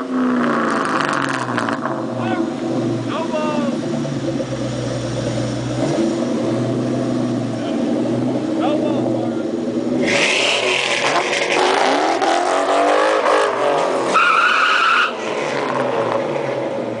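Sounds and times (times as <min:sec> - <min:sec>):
car engine revving: 0:00.0 - 0:17.0
tire squeal: 0:10.0 - 0:16.6.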